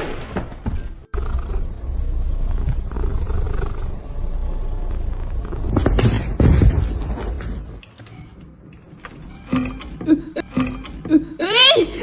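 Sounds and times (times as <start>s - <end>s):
cat purring: 1.1s - 7.8s.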